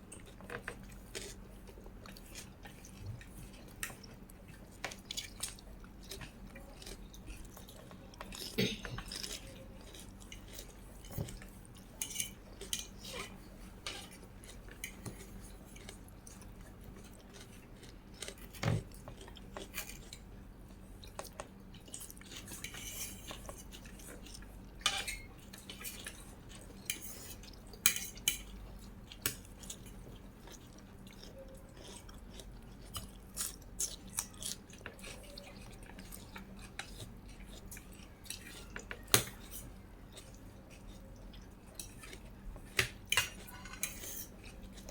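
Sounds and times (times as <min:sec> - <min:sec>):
cutlery clinking on a dish: 0:27.8 - 0:28.5, 0:43.1 - 0:44.3.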